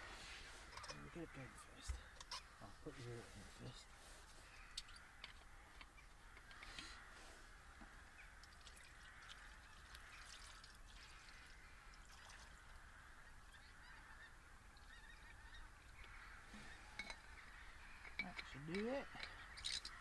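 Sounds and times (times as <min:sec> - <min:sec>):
water pouring into a bag: 0:08.4 - 0:12.6.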